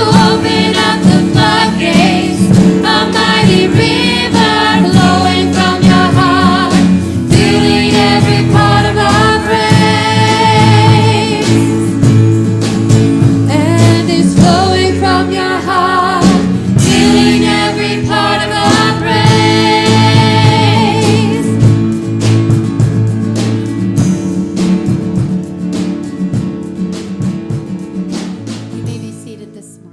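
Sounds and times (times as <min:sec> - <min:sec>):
group singing in harmony: 0:00.0 - 0:12.5, 0:13.5 - 0:22.1.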